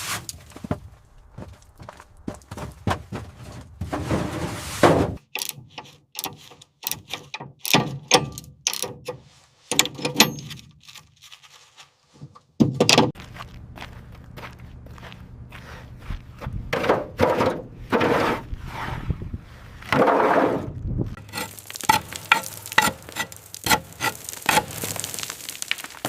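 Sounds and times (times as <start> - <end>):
scrapes and rubs: 3.8 - 7.1, 10.5 - 12.4, 17.2 - 25.2
tools knocking and clinking: 5.2 - 10.7
low steady hum: 13.2 - 18.0.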